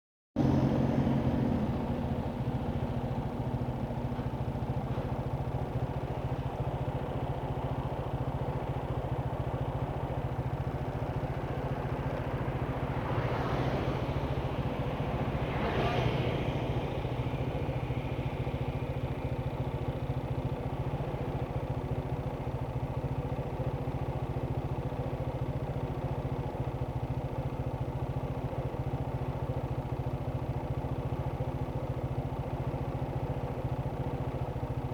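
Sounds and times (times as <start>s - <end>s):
vehicles passing: 0.4s - 6.5s, 9.8s - 19.6s
engine idling: 0.4s - 34.9s.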